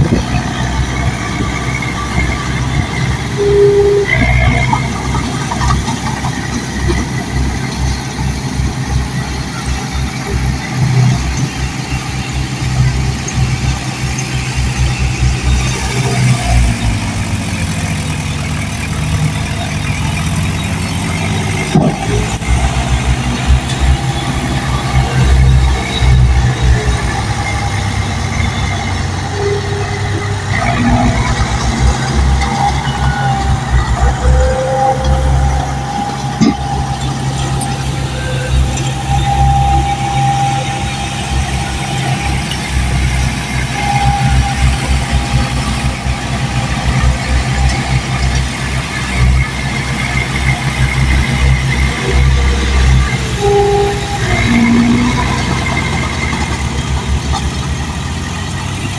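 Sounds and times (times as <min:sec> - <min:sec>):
bulldozer diesel engine running: 0:00.0 - 0:58.9
faint high squeals: 0:00.5 - 0:05.4, 0:19.5 - 0:56.9.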